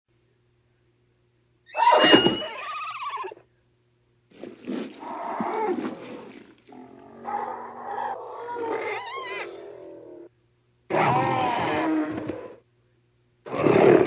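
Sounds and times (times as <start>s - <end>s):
creature growling roar: 6.7s - 10.3s, 10.9s - 12.6s, 13.5s - 14.0s.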